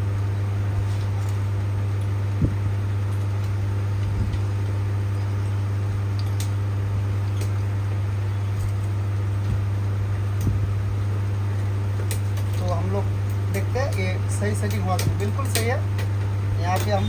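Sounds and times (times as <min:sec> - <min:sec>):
electric fans humming: 0:00.0 - 0:17.0
tools clicking on metal: 0:14.6 - 0:16.1.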